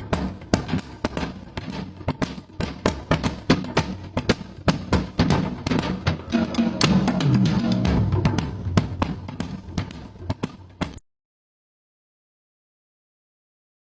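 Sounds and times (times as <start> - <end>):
large drum beaten rapidly: 0.0 - 11.0
clashing cymbals: 5.8 - 8.8.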